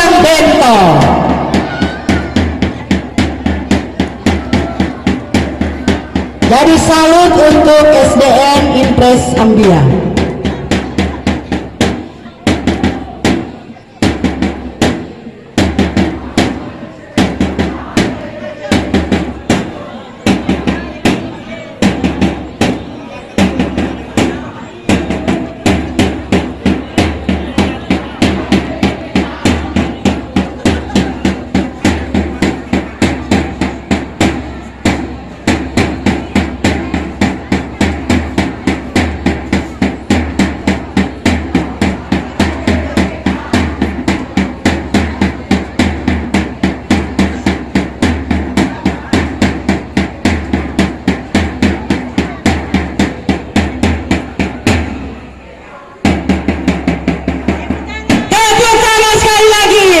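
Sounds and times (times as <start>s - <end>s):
fast drumbeat: 0.0s - 55.4s, 56.0s - 60.0s.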